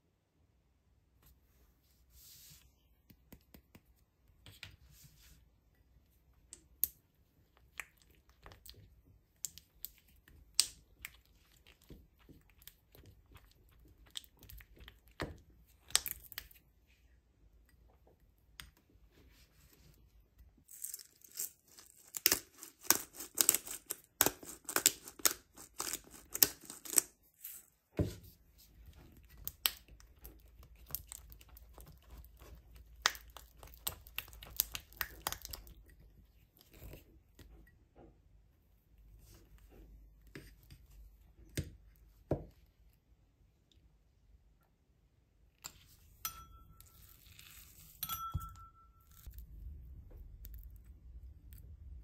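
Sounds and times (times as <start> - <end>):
crinkling and tearing: 20.6 - 27.7.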